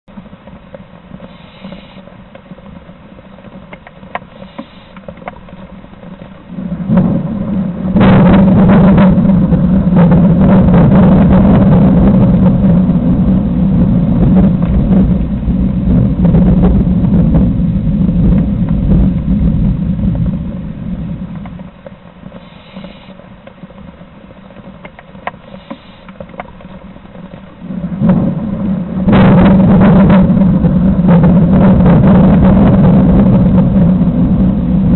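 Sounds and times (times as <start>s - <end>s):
thunder rumbling: 0.1s - 34.9s
faint short hissing: 1.3s - 2.0s, 4.3s - 5.0s, 22.4s - 23.2s.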